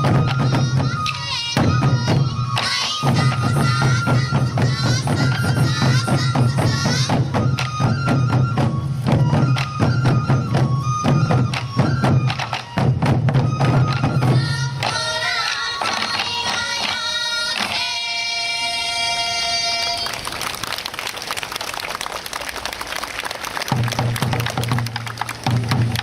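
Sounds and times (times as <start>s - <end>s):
bamboo flute melody with trills: 0.0s - 20.2s.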